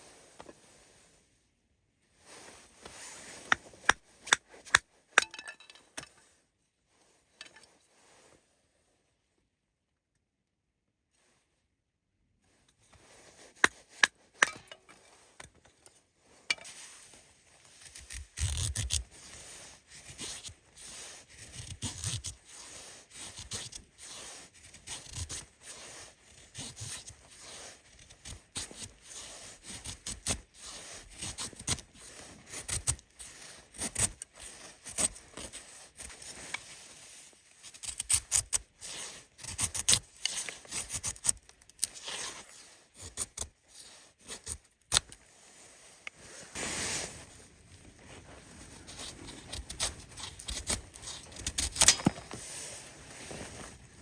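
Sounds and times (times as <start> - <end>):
scraping and rubbing noises: 16.2 - 54.0.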